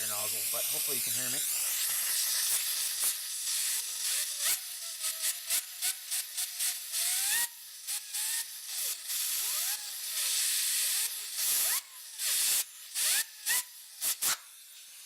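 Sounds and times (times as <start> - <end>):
compressed air nozzle hissing: 0.0 - 4.6, 8.7 - 15.0.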